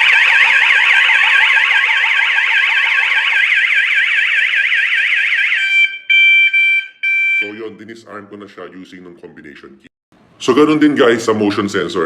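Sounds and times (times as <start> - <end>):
alarm siren warbling: 0.0 - 7.6
steady alarm tone: 0.0 - 7.6.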